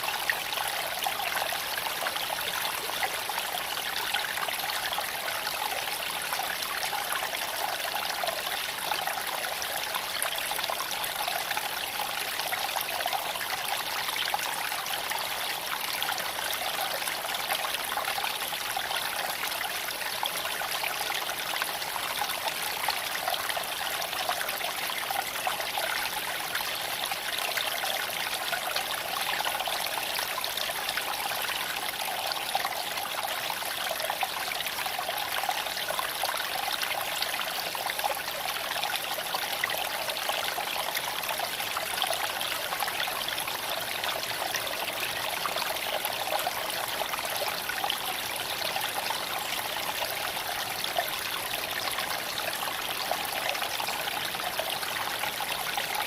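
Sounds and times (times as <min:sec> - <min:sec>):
creek water babbling over stones: 0:00.0 - 0:56.0.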